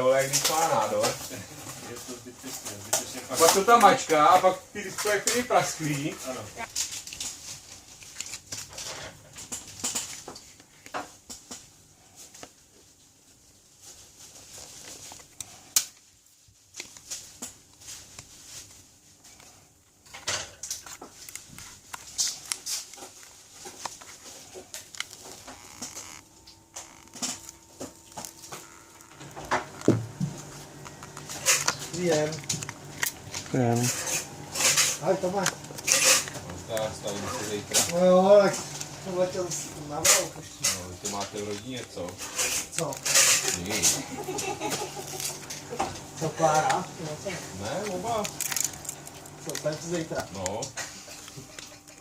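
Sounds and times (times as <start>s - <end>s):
faint steady hum: 0.0s - 52.0s
hand tools and plastic clicking: 19.3s - 52.0s.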